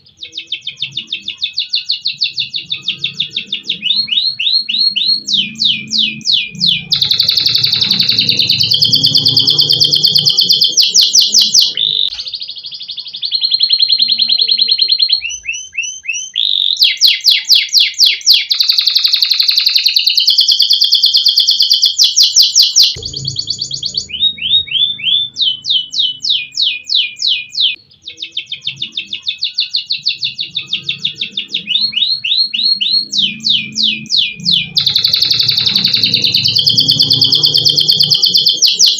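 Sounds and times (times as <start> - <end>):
canary singing: 0.0 - 38.9
faint low hum: 23.0 - 26.8.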